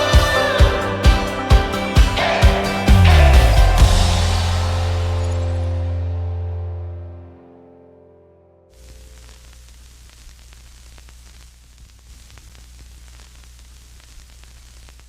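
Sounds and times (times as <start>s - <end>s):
low hum: 2.5s - 11.8s
static hiss with crackling: 8.7s - 15.0s.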